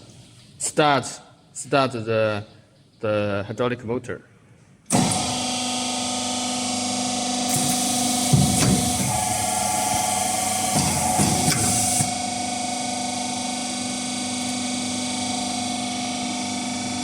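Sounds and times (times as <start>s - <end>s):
hydraulic motor humming: 4.9s - 17.0s
compressed air hiss: 7.5s - 12.1s
machine clunks: 7.5s - 12.2s.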